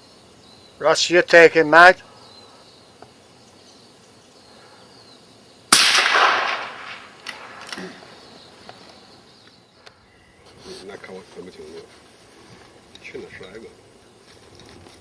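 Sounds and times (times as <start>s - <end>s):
rifle shot echoing: 5.7s - 7.8s.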